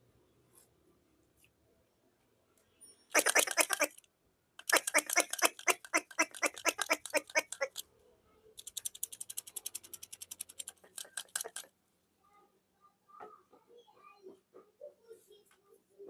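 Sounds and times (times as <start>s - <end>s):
rapid sharp clicking: 3.2s - 4.0s, 4.6s - 7.8s, 8.6s - 11.7s.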